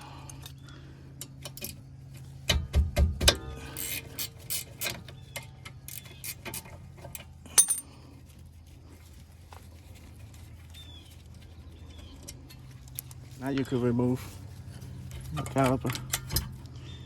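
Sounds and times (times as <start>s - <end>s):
metal tools clinking on brake caliper: 3.3s - 8.2s, 11.8s - 17.0s.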